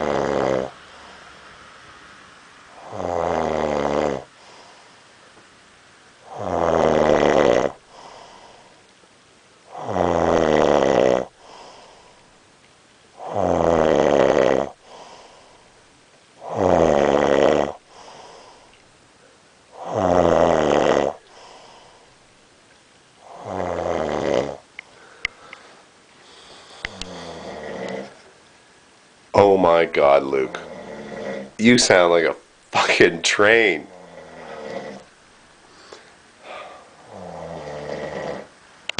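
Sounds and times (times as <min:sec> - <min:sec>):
man snoring loudly: 0:00.0 - 0:00.8, 0:02.7 - 0:04.3, 0:06.2 - 0:08.5, 0:09.7 - 0:12.0, 0:13.2 - 0:15.4, 0:16.4 - 0:18.6, 0:19.7 - 0:21.9, 0:23.2 - 0:24.7, 0:26.8 - 0:28.2, 0:29.4 - 0:31.7, 0:33.7 - 0:35.1, 0:36.4 - 0:38.6
soft breaths: 0:00.0 - 0:03.2, 0:04.2 - 0:06.5, 0:07.7 - 0:10.0, 0:11.0 - 0:16.6, 0:17.6 - 0:20.0, 0:21.0 - 0:32.0, 0:33.6 - 0:38.9.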